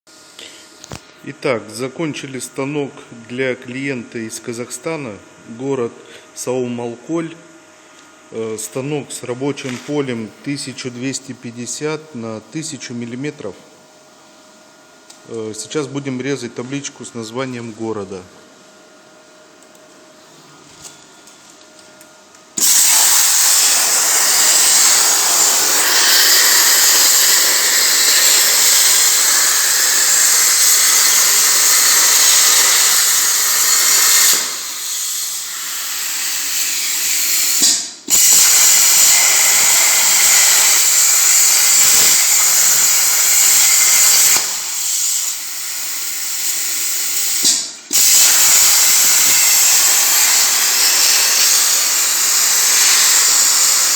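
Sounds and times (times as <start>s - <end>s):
plasma torch hissing: 22.6s - 53.9s.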